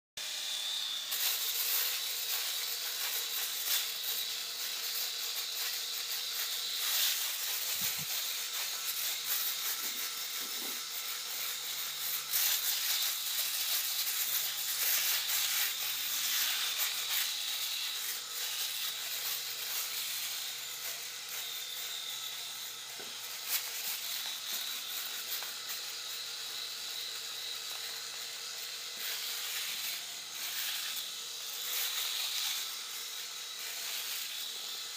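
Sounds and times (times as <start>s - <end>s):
electric razor cutting stubble: 0.2s - 34.9s.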